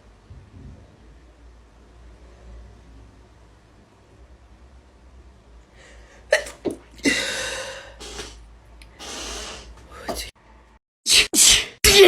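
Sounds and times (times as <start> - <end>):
person sneezing: 6.3 - 8.4, 11.1 - 12.0.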